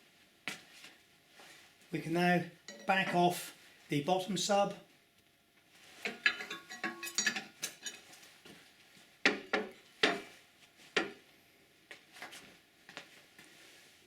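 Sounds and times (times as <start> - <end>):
spanner clinking on metal: 2.7 - 3.0, 6.1 - 8.0.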